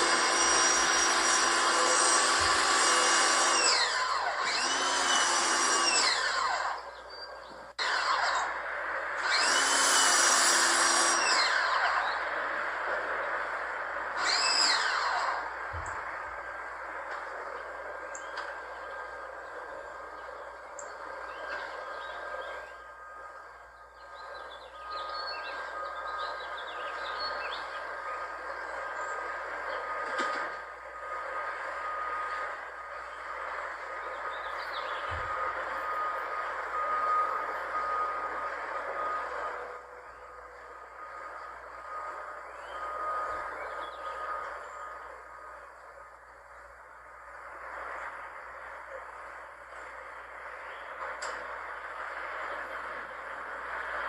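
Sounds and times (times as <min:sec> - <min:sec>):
pressure washer motor whine: 0:00.0 - 0:07.0, 0:07.8 - 0:19.1, 0:27.5 - 0:45.5
pressure washer whining: 0:00.0 - 0:07.0, 0:07.8 - 0:17.2
birds chirping: 0:00.0 - 0:08.4, 0:09.2 - 0:54.0
click: 0:51.0 - 0:51.4.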